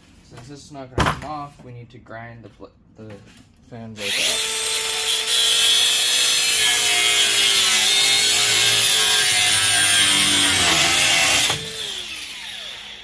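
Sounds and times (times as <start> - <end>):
angle grinder cutting metal: 4.0 - 13.0
grinder motor whine: 4.1 - 13.0.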